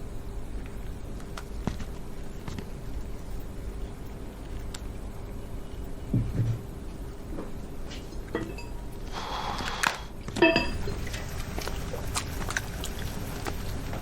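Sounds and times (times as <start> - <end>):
dishes and cutlery clinking: 10.4 - 11.0.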